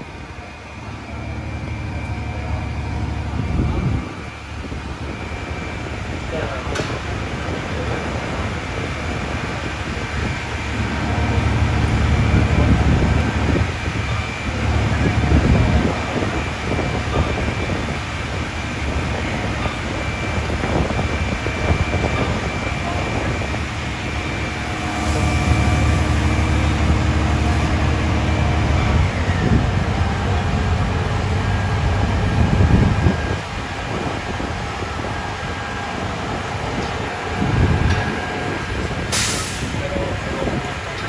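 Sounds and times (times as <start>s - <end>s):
heavy vehicle engine rumbling: 0.0s - 41.0s
thin whine sliding down: 22.7s - 39.7s.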